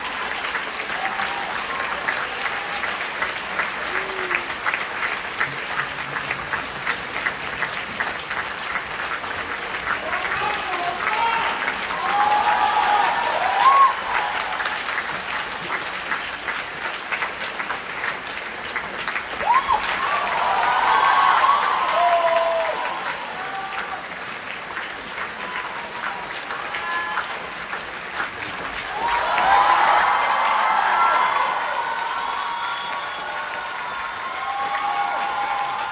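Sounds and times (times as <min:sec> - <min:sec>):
audience applauding: 0:00.0 - 0:35.9
high-pitched cheers: 0:00.9 - 0:03.0, 0:10.1 - 0:14.9, 0:19.4 - 0:24.0, 0:28.9 - 0:35.9.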